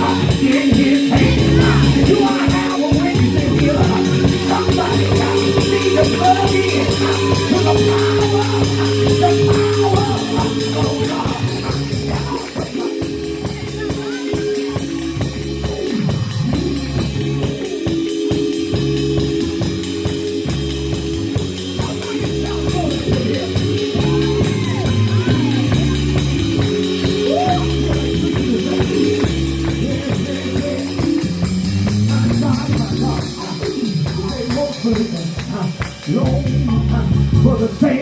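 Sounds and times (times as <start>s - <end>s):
drum kit: 0.0s - 38.0s
keyboard chords: 0.0s - 38.0s.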